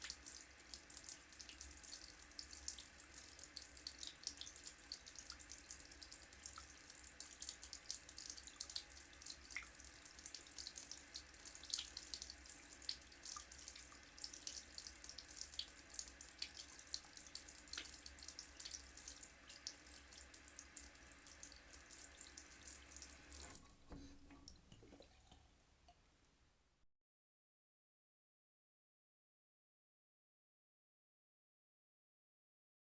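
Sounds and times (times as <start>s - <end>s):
water dripping: 0.0s - 26.4s
tap water splashing in basin: 11.7s - 26.0s.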